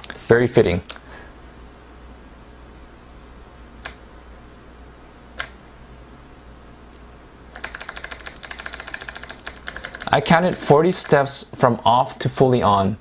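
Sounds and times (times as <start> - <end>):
rapid keypresses: 3.8 - 4.0, 7.5 - 11.3
mechanical keyboard clicks: 7.6 - 11.2.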